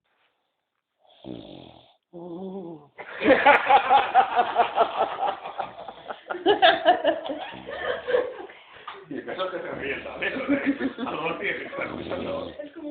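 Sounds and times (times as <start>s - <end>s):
fluttering loud snore: 1.1s - 2.7s, 7.5s - 8.1s, 11.6s - 12.8s.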